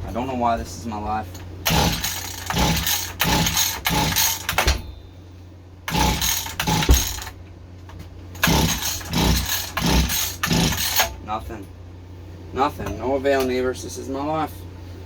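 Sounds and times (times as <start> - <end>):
small engine recoil pull cranking: 1.7 - 4.6, 5.9 - 7.3, 8.4 - 11.1.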